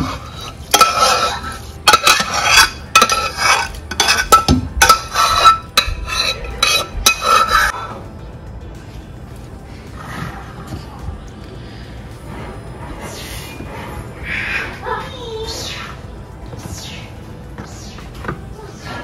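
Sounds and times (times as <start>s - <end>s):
clinks against a pot: 0.0s - 7.8s.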